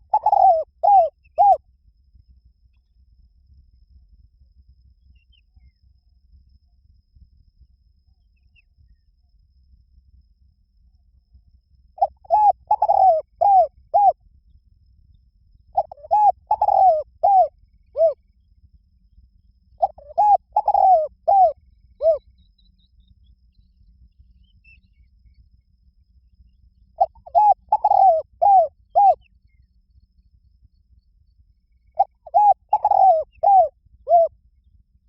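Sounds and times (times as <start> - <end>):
dove cooing: 0.0 - 1.6, 12.0 - 14.2, 15.8 - 18.2, 19.8 - 22.2, 27.0 - 29.2, 32.0 - 34.3.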